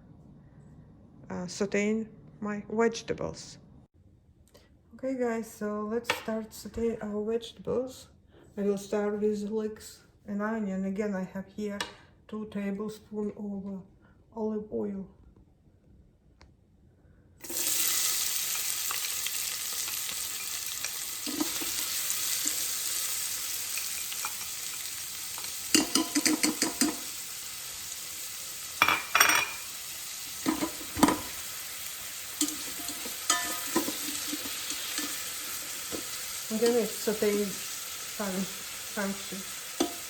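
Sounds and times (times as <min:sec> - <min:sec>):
vegetables sizzling in hot oil: 0:17.4 - 0:40.0
utensil clattering against pot: 0:25.7 - 0:27.1, 0:30.4 - 0:31.4, 0:32.4 - 0:35.2.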